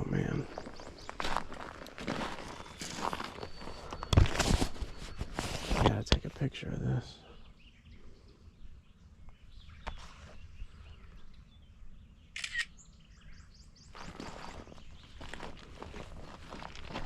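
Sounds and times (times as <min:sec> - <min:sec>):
footsteps: 0:00.0 - 0:06.0, 0:14.0 - 0:17.0
birds chirping: 0:00.0 - 0:17.0
camera shutter click: 0:12.4 - 0:12.8.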